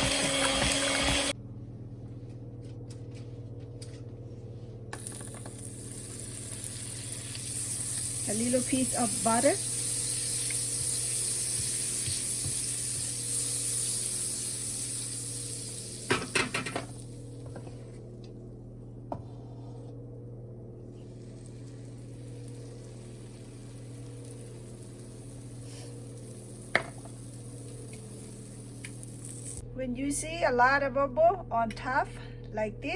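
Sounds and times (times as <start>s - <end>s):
steady low hum: 1.0s - 32.9s
butter sizzling in a pan: 5.0s - 17.2s, 21.0s - 29.6s.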